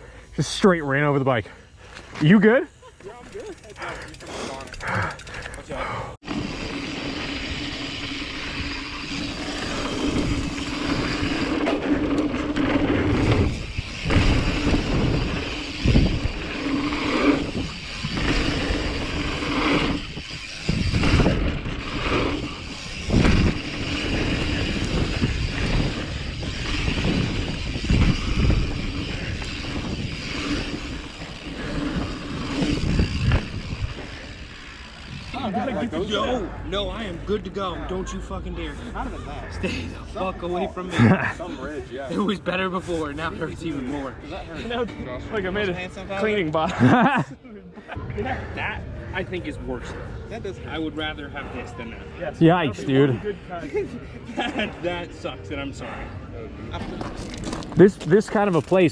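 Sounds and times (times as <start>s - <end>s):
bike tyres rattling over dirt: 3.0s - 35.7s, 56.8s - 58.9s.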